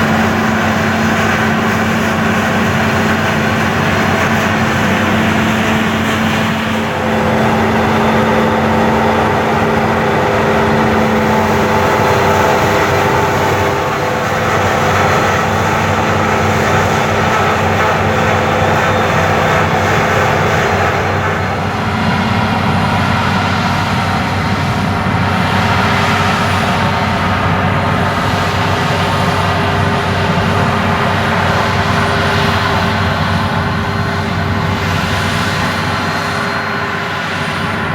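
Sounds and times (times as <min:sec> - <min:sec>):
steady machine tones: 0:00.0 - 0:34.9
combine harvester running: 0:00.0 - 0:37.9.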